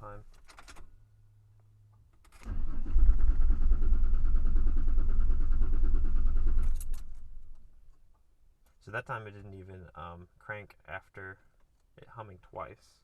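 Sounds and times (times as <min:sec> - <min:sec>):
engine cranked by starter: 0:02.4 - 0:07.1.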